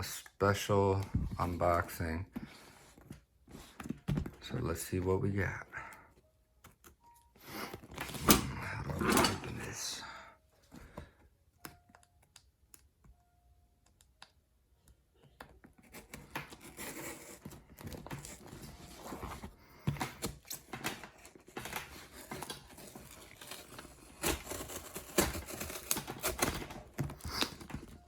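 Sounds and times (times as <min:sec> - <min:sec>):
package being torn open: 0:20.1 - 0:28.0.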